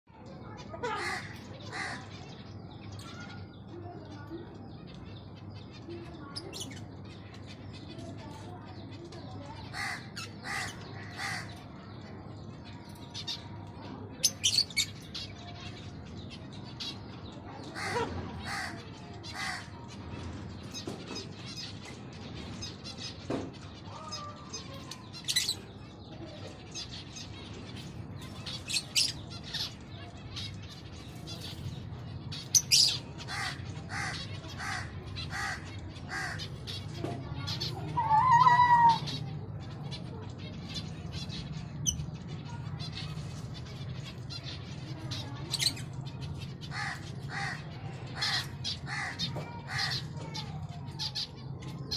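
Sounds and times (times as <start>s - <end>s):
wavering bird call: 37.8s - 39.2s.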